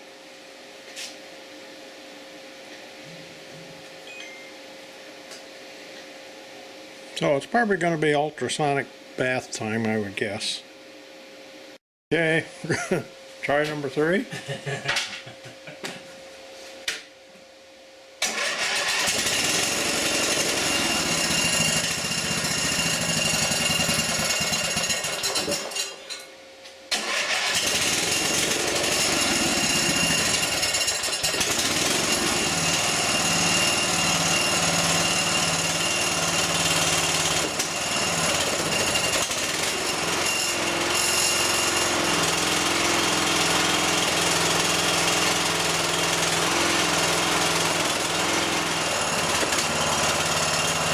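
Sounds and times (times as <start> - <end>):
lawn tractor engine running: 18.2 - 21.4, 26.9 - 32.3, 39.6 - 50.9.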